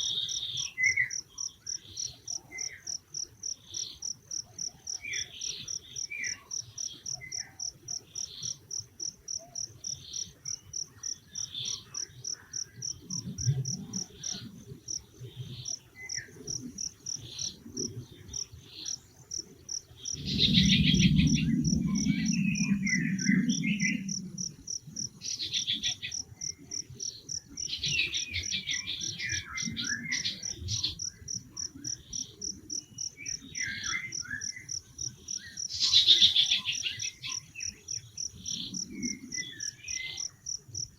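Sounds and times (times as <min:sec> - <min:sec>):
bird calls: 0:15.2 - 0:34.8
insect chirping at high pitch: 0:15.7 - 0:27.7.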